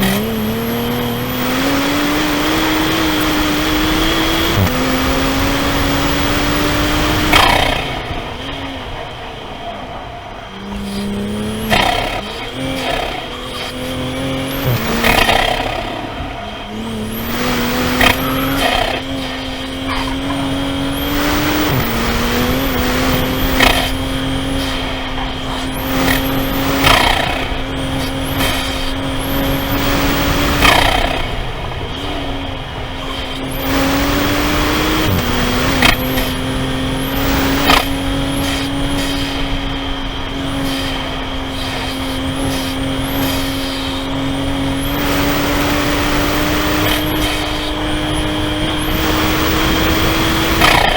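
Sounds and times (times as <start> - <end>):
car engine revving hard: 0.0 - 50.9
tyres hissing on wet track: 38.3 - 39.6, 40.4 - 44.2.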